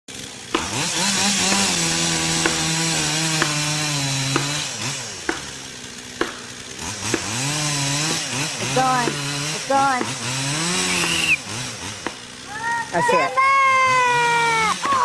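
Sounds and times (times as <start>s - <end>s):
chainsaw revving and idling: 0.1s - 15.0s
sharp clicks: 10.9s - 11.4s.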